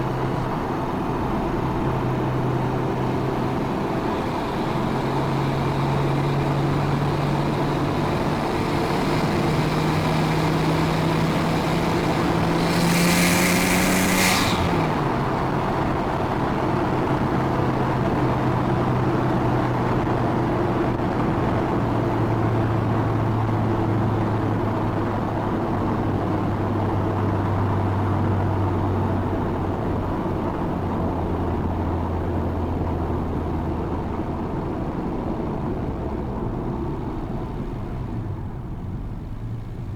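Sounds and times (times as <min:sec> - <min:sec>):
turbocharged car engine revving: 0:03.9 - 0:16.6.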